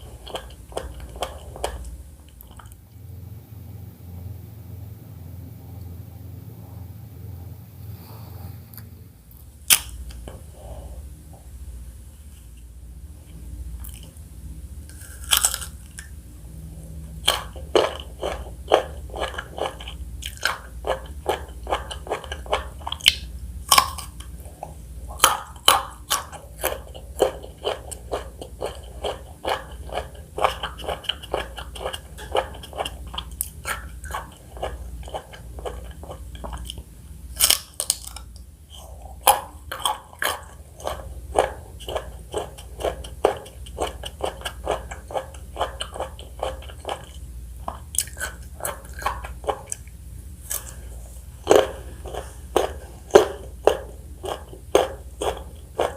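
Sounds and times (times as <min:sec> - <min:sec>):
chewing crunchy fresh fruit: 0:00.0 - 0:02.8, 0:13.8 - 0:14.2, 0:14.9 - 0:16.2, 0:16.9 - 0:55.9.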